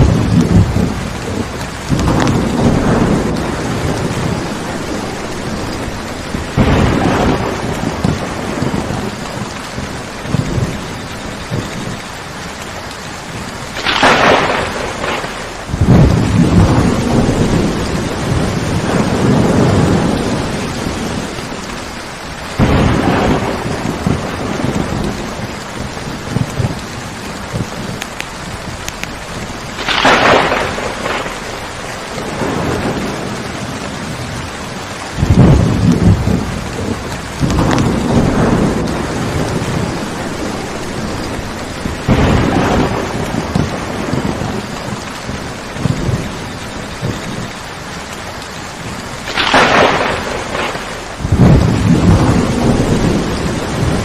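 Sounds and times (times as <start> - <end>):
sharp thunder cracks: 0.0 - 12.0, 13.7 - 21.9, 22.5 - 47.6, 48.9 - 54.0
low rumbles of thunder: 0.0 - 54.0
steady rain: 0.0 - 54.0.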